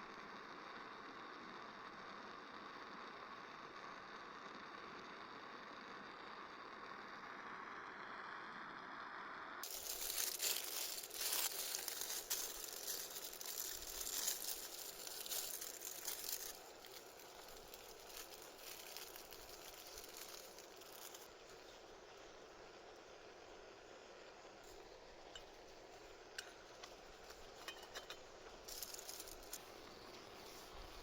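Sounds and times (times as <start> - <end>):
crinkling and rustling: 9.6 - 21.8, 24.6 - 31.0.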